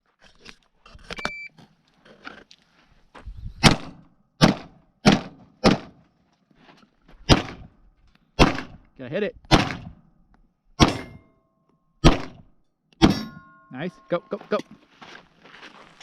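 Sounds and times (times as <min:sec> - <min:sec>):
gunshots: 0:03.6 - 0:06.0, 0:07.3 - 0:07.7, 0:08.4 - 0:08.8, 0:09.5 - 0:10.0, 0:12.0 - 0:13.4.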